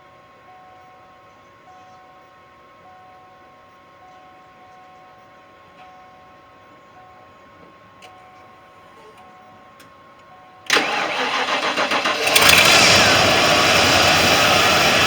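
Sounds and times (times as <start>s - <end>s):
car engine running: 10.7s - 15.0s
starter cranking engine: 10.7s - 15.0s.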